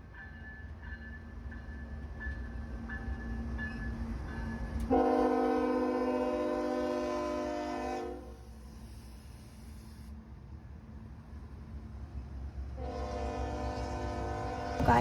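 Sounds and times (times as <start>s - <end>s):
passing train rumble: 0.0s - 15.0s
train air horn: 4.9s - 8.5s, 12.8s - 14.9s.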